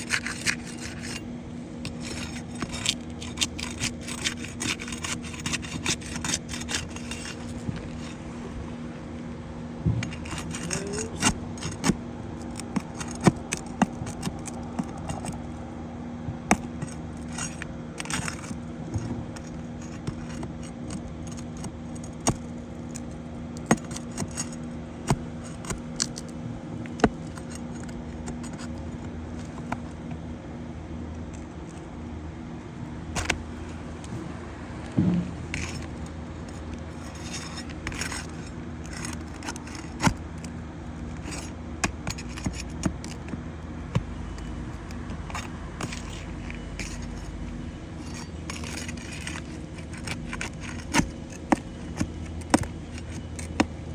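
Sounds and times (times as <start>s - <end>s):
hand tool clinking and scraping: 0.0s - 8.6s, 10.0s - 15.6s, 16.5s - 30.0s, 33.1s - 53.9s
steady low hum: 0.0s - 53.9s.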